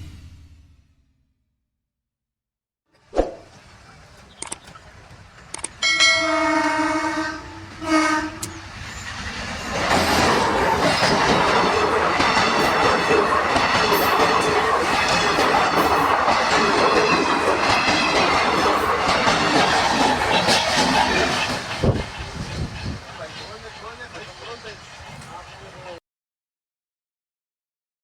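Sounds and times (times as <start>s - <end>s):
train wheel and rail rush: 3.0s - 26.0s
train horn honking: 5.8s - 8.8s.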